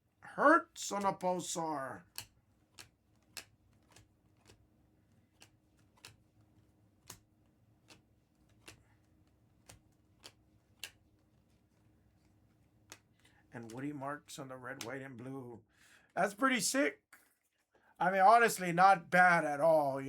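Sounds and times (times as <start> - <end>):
trading cards flipping clicks: 2.0 - 13.9.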